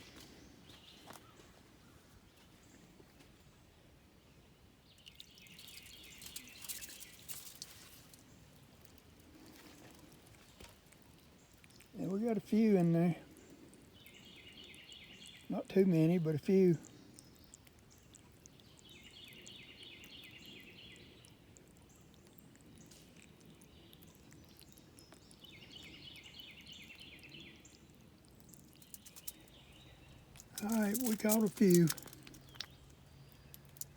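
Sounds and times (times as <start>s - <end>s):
faint creek background: 0.0s - 33.9s
water dripping and splashing: 5.0s - 12.0s, 27.0s - 33.9s.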